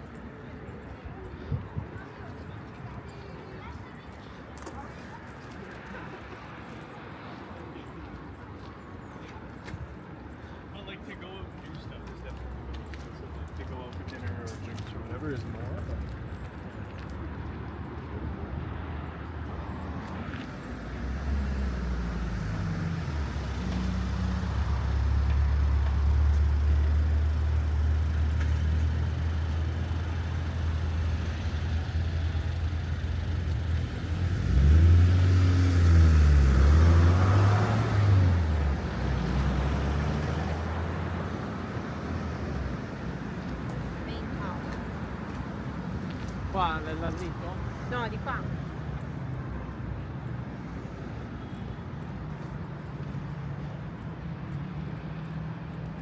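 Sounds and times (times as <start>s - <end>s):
street traffic: 0.0s - 56.0s
large vehicle engine revving: 33.6s - 41.1s.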